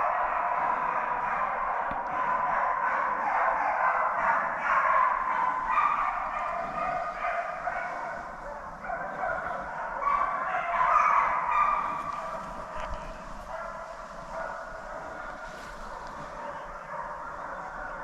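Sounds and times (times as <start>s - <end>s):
hounds baying: 0.0s - 18.0s.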